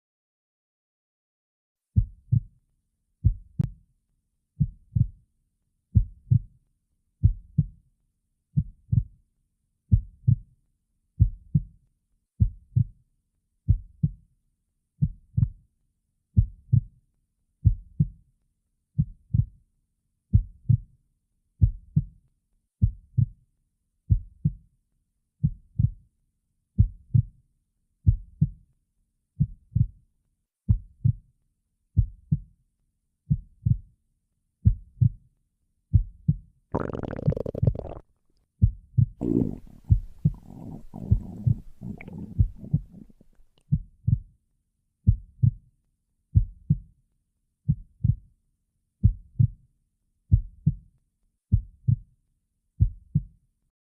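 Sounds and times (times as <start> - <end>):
human heartbeat: 4.6 - 5.2, 6.0 - 6.5, 7.2 - 7.8, 9.9 - 10.5, 22.8 - 23.4, 29.4 - 30.0, 38.6 - 44.3, 45.1 - 45.6, 47.7 - 48.2, 49.0 - 49.6, 50.3 - 50.8, 51.5 - 52.0, 52.8 - 53.3.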